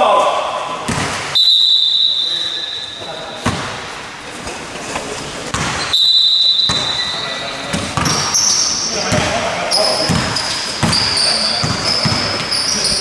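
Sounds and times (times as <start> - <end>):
basketball bouncing: 0.8 - 1.5, 3.3 - 13.0
referee's whistle blast: 1.3 - 3.4, 5.8 - 7.5.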